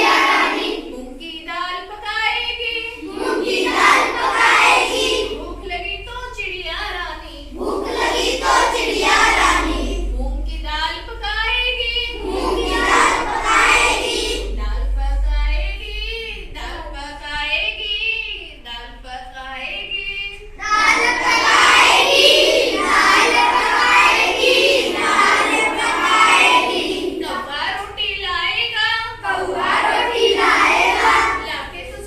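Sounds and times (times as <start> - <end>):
children singing: 0.0 - 1.2, 2.9 - 5.7, 7.5 - 10.1, 12.1 - 14.6, 20.6 - 27.6, 29.1 - 31.7.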